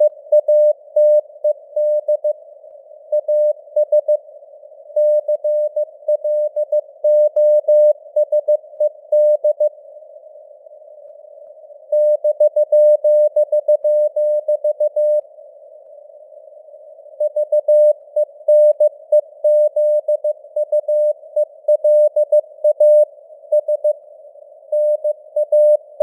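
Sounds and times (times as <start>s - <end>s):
morse code beeps: 24.8s - 26.0s.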